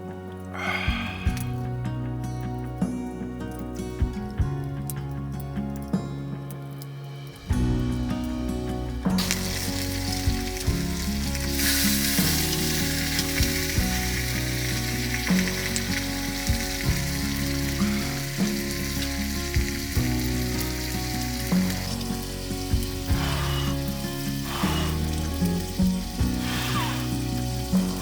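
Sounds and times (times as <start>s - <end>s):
background music with steady beat: 0.0s - 28.0s
food sizzling in a pan: 9.0s - 28.0s.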